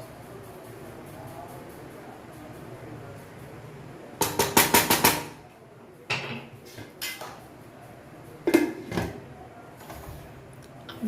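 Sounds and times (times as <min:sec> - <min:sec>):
utensil clinking on metal cookware: 0:04.2 - 0:05.4.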